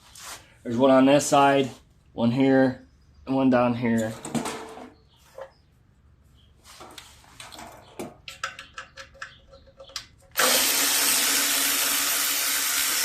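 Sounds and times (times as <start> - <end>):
power tool running: 10.4 - 13.0.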